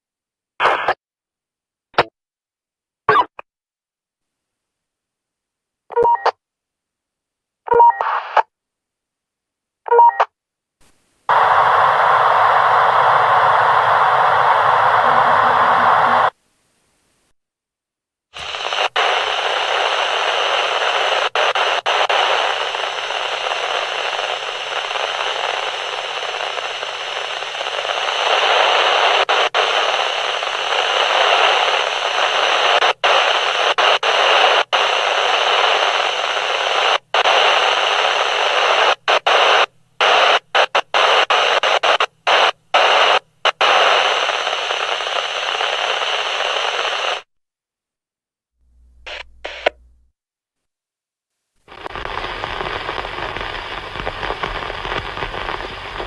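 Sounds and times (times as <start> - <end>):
walkie-talkie radio static: 11.3 - 16.4, 18.4 - 47.3, 49.1 - 49.8, 51.7 - 56.0.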